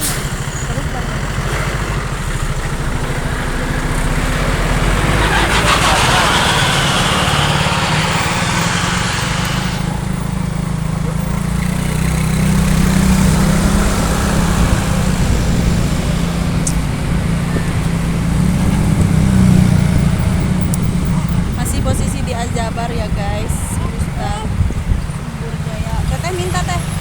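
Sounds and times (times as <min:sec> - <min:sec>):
hiss: 0:00.0 - 0:00.6, 0:05.2 - 0:10.2
diesel engine rumbling: 0:00.0 - 0:27.0.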